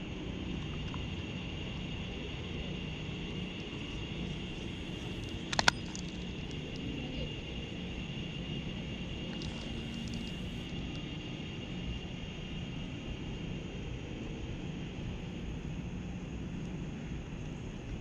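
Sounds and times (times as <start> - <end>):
high insect drone: 0.0 - 17.9
sharp clicks: 4.7 - 6.8, 9.3 - 10.7.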